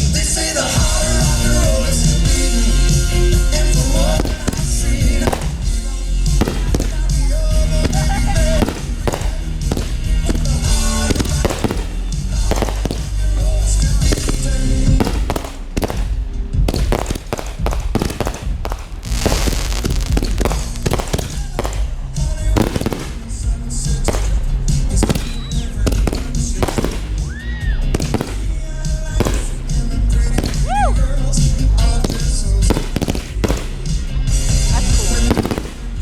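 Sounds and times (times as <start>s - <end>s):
fireworks bursts and booms: 0.0s - 36.0s
music playing: 0.0s - 36.0s
whistle-like tone: 25.2s - 25.7s.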